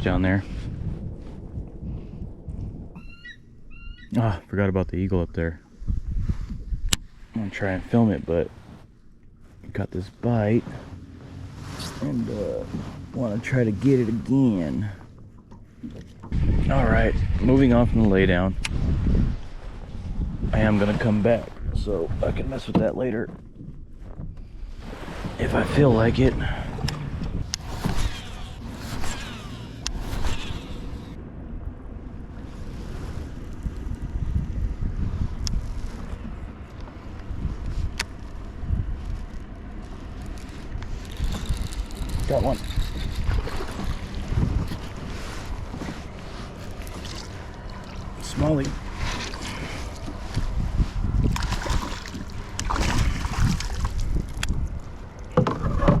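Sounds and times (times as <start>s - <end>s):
wind buffeting microphone: 0.0s - 8.6s, 9.7s - 56.0s
water lapping: 24.7s - 31.2s, 40.3s - 55.2s.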